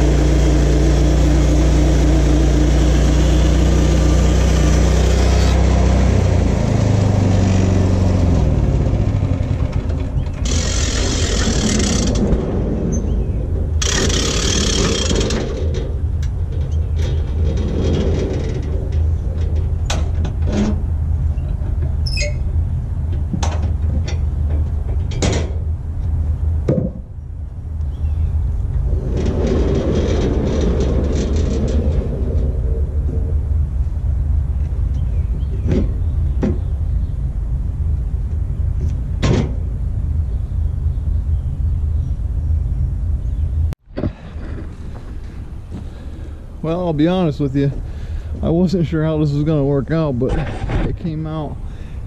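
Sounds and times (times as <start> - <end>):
sawmill engine running: 0.0 - 16.0
bandsaw blade cutting wood: 4.7 - 5.8, 10.4 - 12.4, 13.8 - 15.5
sharp knocks: 26.6 - 27.1.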